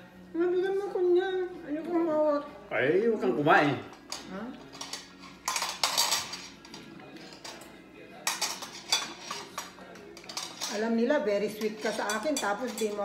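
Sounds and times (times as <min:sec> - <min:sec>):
cutlery clinking against dishes: 0:03.8 - 0:13.0.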